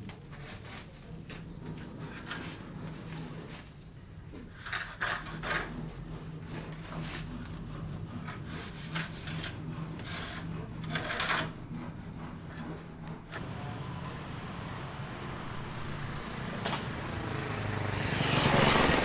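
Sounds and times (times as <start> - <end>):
tool scraping a hard surface: 4.4 - 13.5
steady low hum: 12.8 - 19.0.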